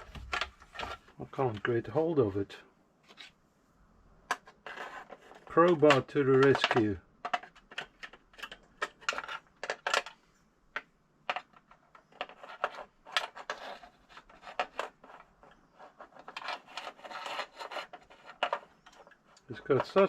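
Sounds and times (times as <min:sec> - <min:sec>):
pry bar scraping metal against plastic: 0:11.3 - 0:20.0.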